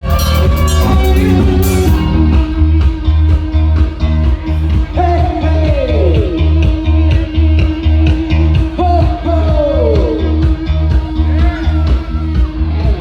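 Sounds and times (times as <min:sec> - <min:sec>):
long note falling in pitch: 0:00.0 - 0:03.0
live rock band playing: 0:00.0 - 0:13.0
pulsing bass line: 0:00.0 - 0:13.0.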